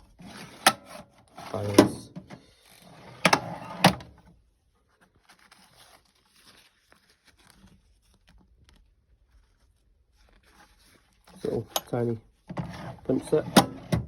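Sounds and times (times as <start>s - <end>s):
steel drawer sliding: 2.8s - 4.2s, 12.6s - 14.0s.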